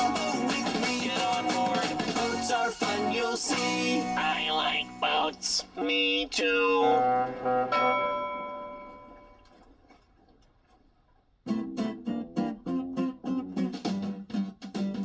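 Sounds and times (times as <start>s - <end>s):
guitar strumming chords: 0.0s - 9.4s, 11.5s - 15.0s
song chord ringing: 6.8s - 9.4s.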